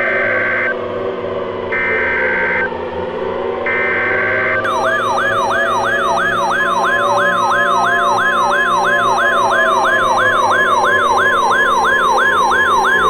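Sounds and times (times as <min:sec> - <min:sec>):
electronic yelp siren: 0:03.7 - 0:13.0
steady high alert tone: 0:04.7 - 0:13.0.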